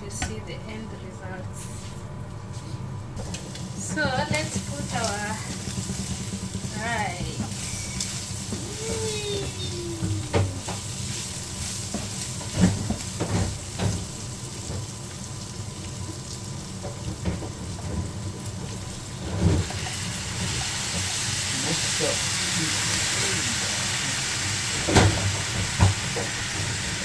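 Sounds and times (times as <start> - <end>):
food sizzling in a pot: 3.2 - 27.0
bright hiss: 20.1 - 27.0.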